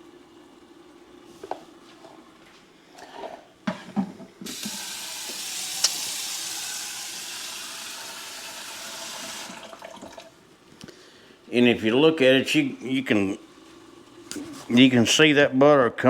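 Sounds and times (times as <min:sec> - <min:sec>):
batter sizzling in skillet: 0:04.5 - 0:07.2
faucet water running into sink: 0:04.5 - 0:10.3.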